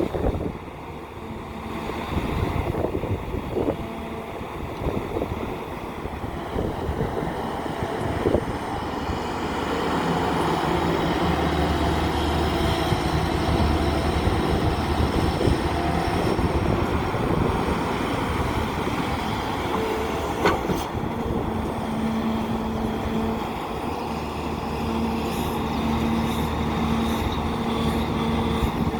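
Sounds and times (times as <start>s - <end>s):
diesel engine running: 0.0s - 28.9s.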